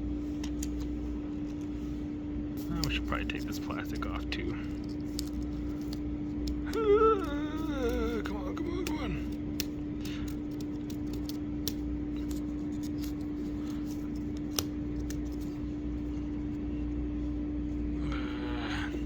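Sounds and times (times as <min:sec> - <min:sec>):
steady hum: 0:00.0 - 0:19.0
plastic film peeling crinkles: 0:02.6 - 0:16.6.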